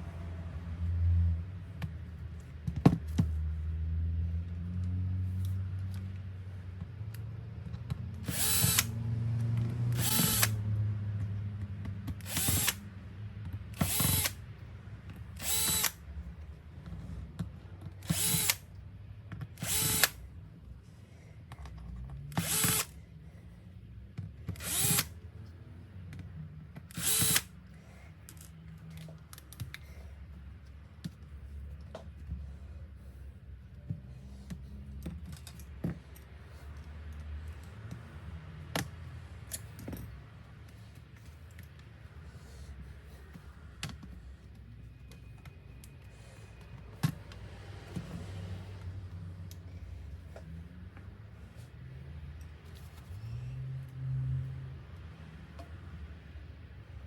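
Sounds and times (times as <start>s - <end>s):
electric screwdriver whirring: 8.2s - 9.0s, 9.9s - 10.6s, 12.1s - 12.9s, 13.7s - 14.4s, 15.3s - 16.0s, 18.0s - 18.7s, 19.6s - 20.2s, 22.3s - 23.0s, 24.4s - 25.2s, 26.9s - 27.5s.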